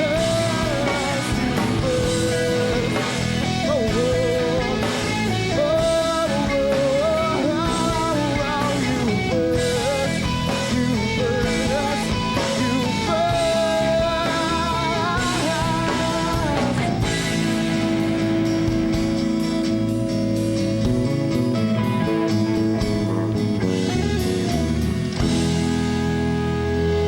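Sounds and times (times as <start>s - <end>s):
person singing: 0.0s - 18.4s
electric guitar: 0.0s - 27.0s
rock band playing: 0.0s - 27.0s.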